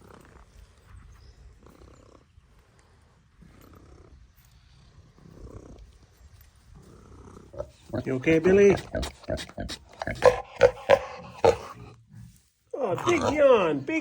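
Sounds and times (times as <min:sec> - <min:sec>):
pig grunting softly: 0:06.8 - 0:13.9.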